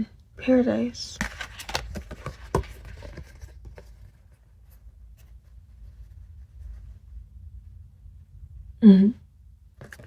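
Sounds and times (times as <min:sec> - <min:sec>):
room hum: 0:00.0 - 0:10.0
cards clicking and rustling: 0:01.0 - 0:04.1.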